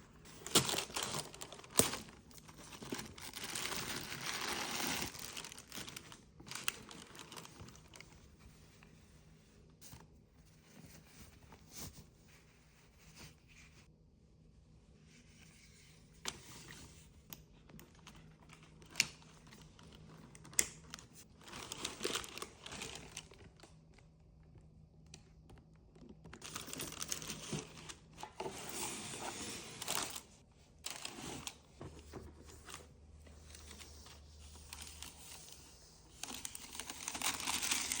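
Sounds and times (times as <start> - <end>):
paper packaging rustling: 0.3 - 8.9, 18.0 - 23.6, 26.3 - 38.0.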